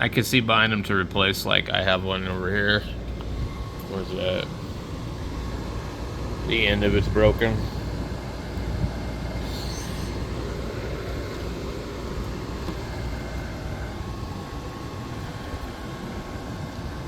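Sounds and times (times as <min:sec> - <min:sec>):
low rumbling background noise: 0:00.0 - 0:17.0.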